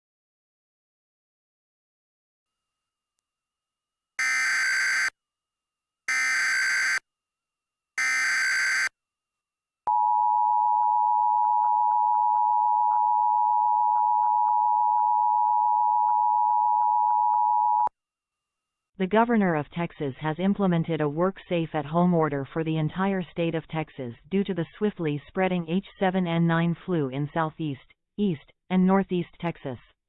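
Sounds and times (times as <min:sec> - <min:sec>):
harsh two-tone alarm: 0:04.2 - 0:05.1, 0:06.1 - 0:07.0, 0:08.0 - 0:08.9.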